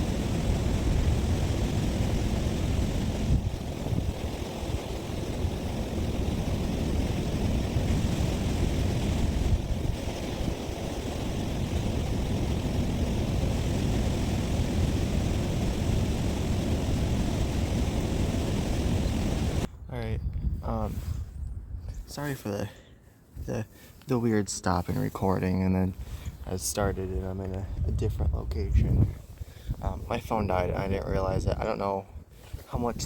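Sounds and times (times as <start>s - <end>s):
wind buffeting microphone: 0.0s - 22.2s, 26.0s - 33.0s.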